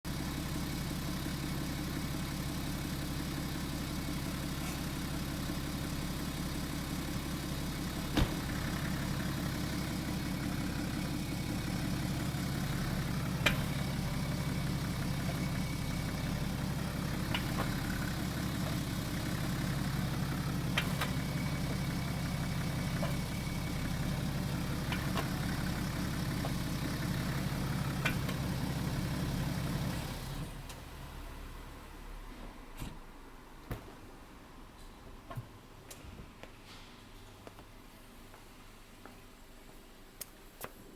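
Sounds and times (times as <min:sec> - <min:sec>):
car engine running: 0:00.1 - 0:31.6.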